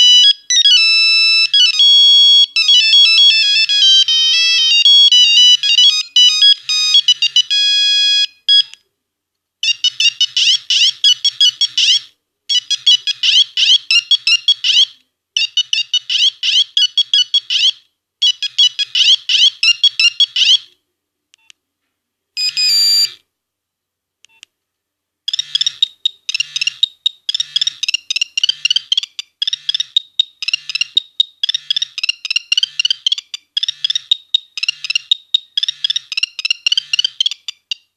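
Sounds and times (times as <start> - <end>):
monophonic phone ringtones: 0.0 - 8.7, 22.4 - 23.2, 25.3 - 37.5.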